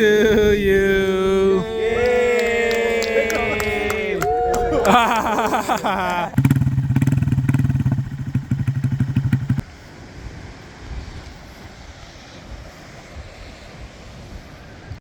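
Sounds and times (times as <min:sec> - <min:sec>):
outdoor background noise: 0:00.0 - 0:15.0
pulsing engine running: 0:04.9 - 0:09.6.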